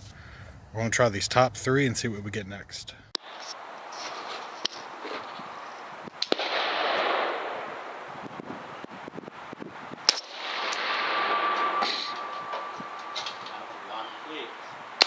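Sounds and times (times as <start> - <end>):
rifle shots: 3.2 - 8.4, 10.0 - 14.2.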